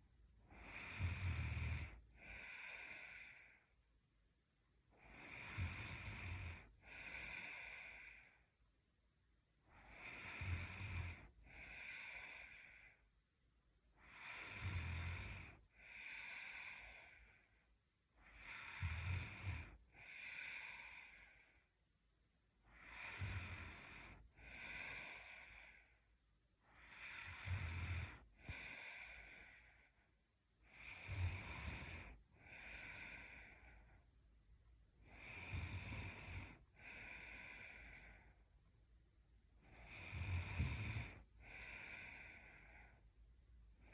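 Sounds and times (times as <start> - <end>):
woman snoring: 0.5 - 3.7, 4.9 - 8.5, 9.6 - 13.0, 13.9 - 17.5, 18.2 - 21.6, 22.6 - 26.0, 26.7 - 30.0, 30.6 - 34.0, 35.0 - 38.4, 39.6 - 43.0.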